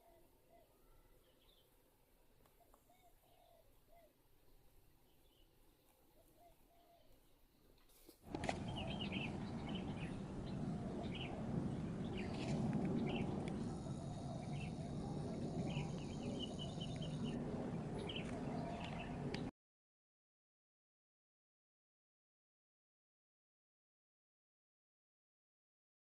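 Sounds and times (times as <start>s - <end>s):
low outdoor background noise: 0.0s - 19.5s
small birds chirping: 8.3s - 19.5s.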